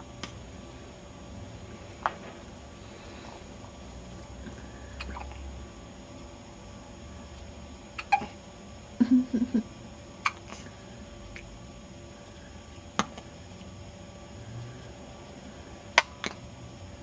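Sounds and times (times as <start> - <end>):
baby hiccuping: 5.0 - 5.2, 8.0 - 8.3, 10.2 - 10.6.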